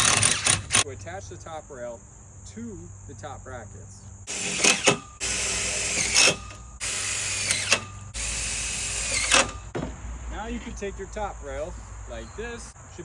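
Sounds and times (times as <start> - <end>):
cordless drill driving screws: 0.0 - 0.8, 4.3 - 9.7.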